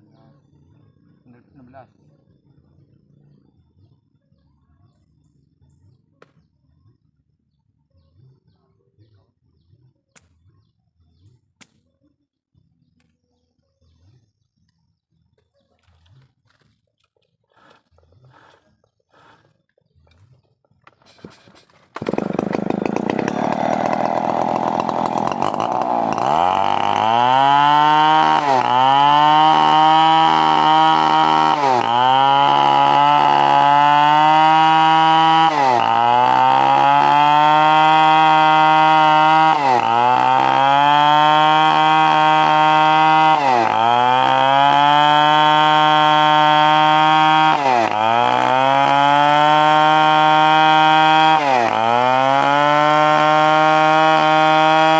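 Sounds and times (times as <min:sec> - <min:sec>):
chainsaw sawing timber: 0:17.5 - 0:19.6, 0:21.1 - 0:54.9.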